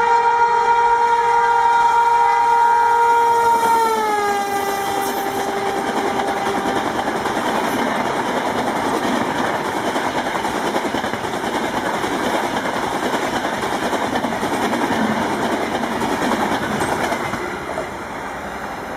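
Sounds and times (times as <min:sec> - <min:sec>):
train rumbling past: 0:00.0 - 0:18.9
wheels clattering on rails: 0:04.7 - 0:18.1.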